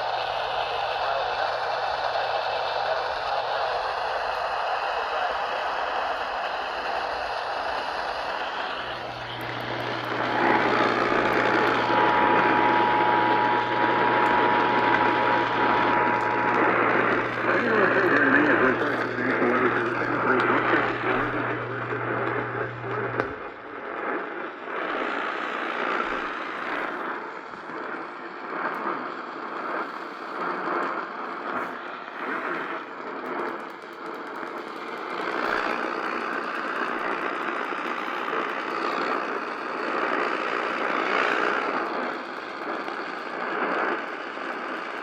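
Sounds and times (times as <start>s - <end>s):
radio static hiss: 0.0s - 45.0s
low hum: 8.4s - 24.2s.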